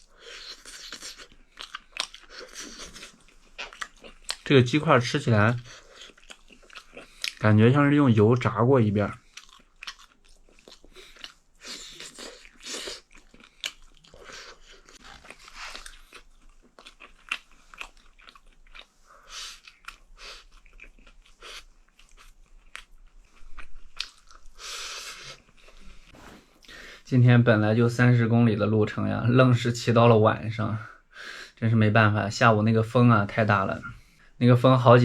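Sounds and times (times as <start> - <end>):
person chewing and crunching: 0.0 - 4.5, 5.6 - 7.4, 9.2 - 26.8.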